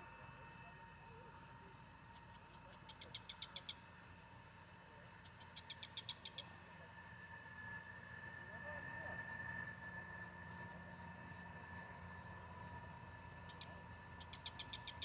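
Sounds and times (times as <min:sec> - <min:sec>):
faint high-pitched drone: 0:04.9 - 0:15.0.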